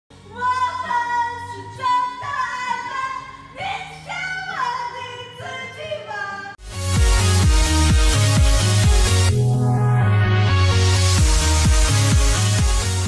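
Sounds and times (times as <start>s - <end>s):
woman singing: 0.3s - 6.6s.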